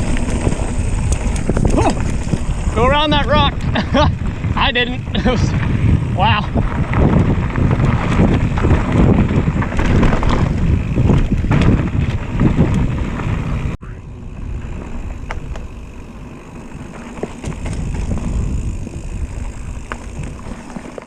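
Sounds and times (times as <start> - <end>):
scattered clicks: 0.0 - 2.5
bike rattling over rocks: 0.0 - 21.0
wind buffeting microphone: 0.0 - 21.0.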